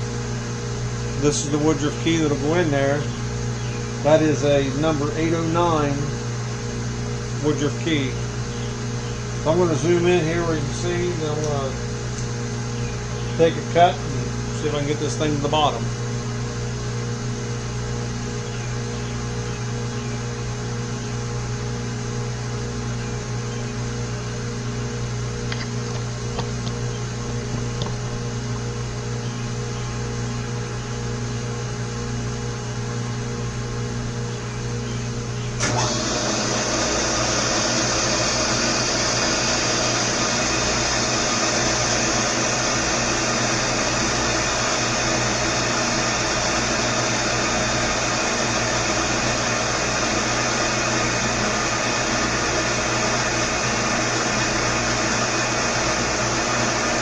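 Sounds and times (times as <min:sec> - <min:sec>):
loud steady hiss: 0:00.0 - 0:08.4, 0:35.6 - 0:57.0
milling machine motor hum: 0:00.0 - 0:57.0.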